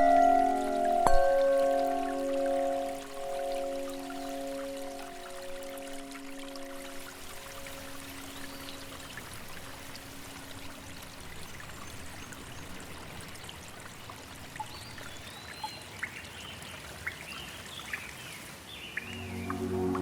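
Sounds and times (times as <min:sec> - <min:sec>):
soft ambient music: 0:00.0 - 0:10.6, 0:19.0 - 0:20.0
stream of water trickling: 0:00.0 - 0:20.0.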